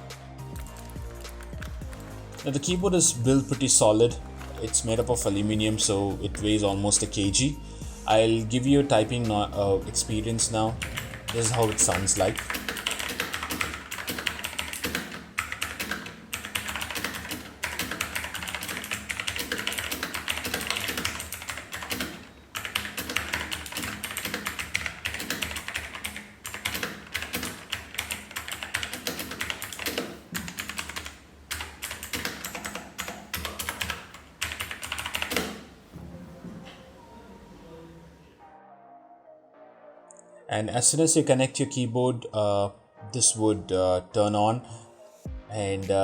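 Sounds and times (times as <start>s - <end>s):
fast typing on mechanical keyboard: 0.6s - 2.7s, 10.6s - 35.6s.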